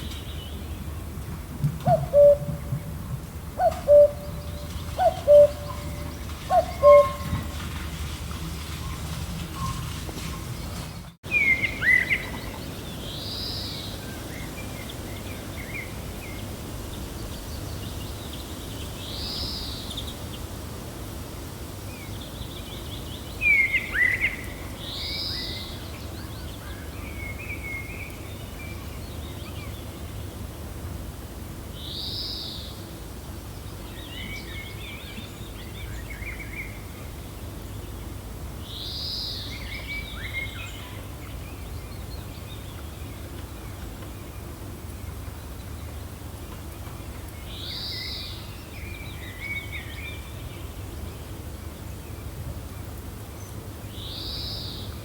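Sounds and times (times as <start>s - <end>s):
gentle wind: 0.0s - 55.0s
small birds calling: 3.6s - 7.8s.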